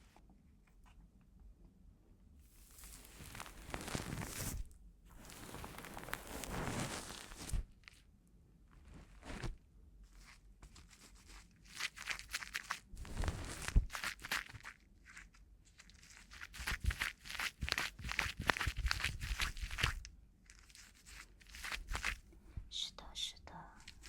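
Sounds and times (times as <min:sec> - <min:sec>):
close-up rustling: 0:02.5 - 0:08.1, 0:08.7 - 0:24.0
crackling and crinkling clicks: 0:02.6 - 0:08.0, 0:11.7 - 0:22.4.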